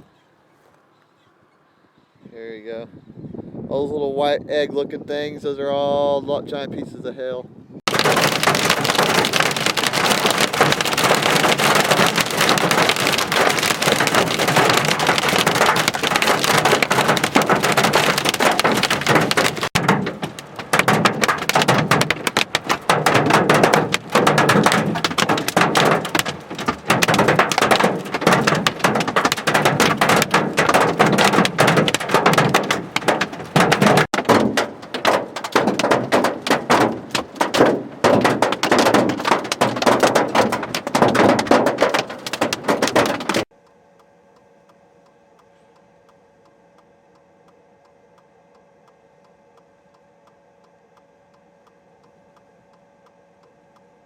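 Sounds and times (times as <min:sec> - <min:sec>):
heavy rain and hail pelting: 0:07.9 - 0:43.5
single hailstone strikes: 0:07.9 - 0:43.5.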